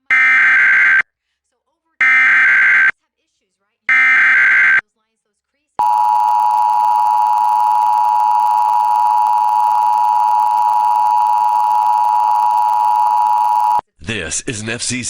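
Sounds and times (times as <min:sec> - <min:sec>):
loud steady two-tone alert signal: 0:02.0 - 0:02.9, 0:03.9 - 0:04.8, 0:05.8 - 0:13.8.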